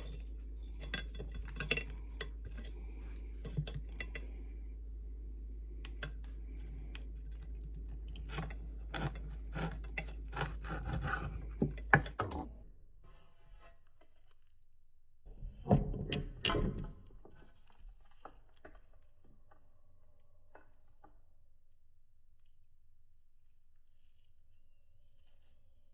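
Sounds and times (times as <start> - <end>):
metal utensils clinking on cookware: 0.0 - 4.2
low hum: 0.0 - 15.7.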